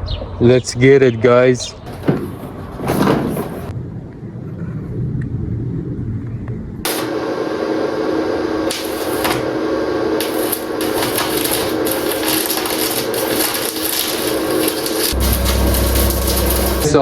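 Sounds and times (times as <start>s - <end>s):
low rumble: 3.7s - 6.9s, 11.2s - 17.0s
arc welding crackle: 6.8s - 17.0s.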